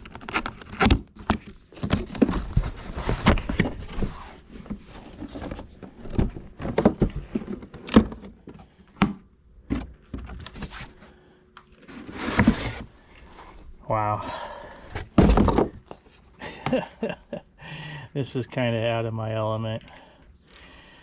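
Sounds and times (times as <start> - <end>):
cardboard rustling: 0.0 - 9.1, 9.7 - 11.2, 11.8 - 13.8, 14.8 - 17.0.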